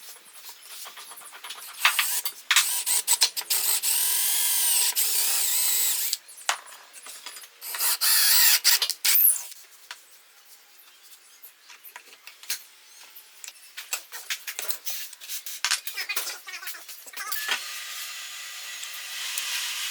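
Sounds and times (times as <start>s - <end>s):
high-speed power tool running: 1.8s - 6.2s, 17.6s - 19.9s.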